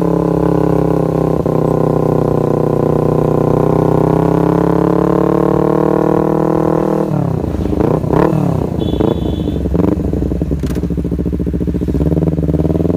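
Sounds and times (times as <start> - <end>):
motorcycle engine revving: 0.0 - 12.9.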